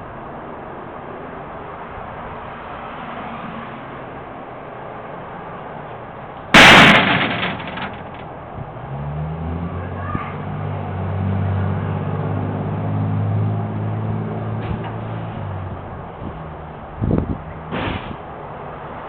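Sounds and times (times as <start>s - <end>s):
loud bang with rattle: 6.5s - 8.3s.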